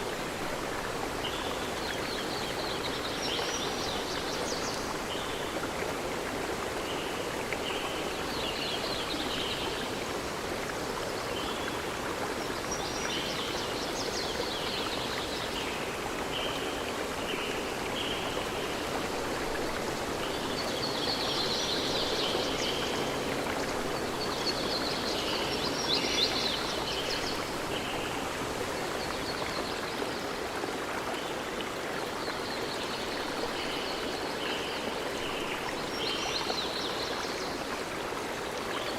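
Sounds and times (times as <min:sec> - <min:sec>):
stream flowing: 0:00.0 - 0:38.9.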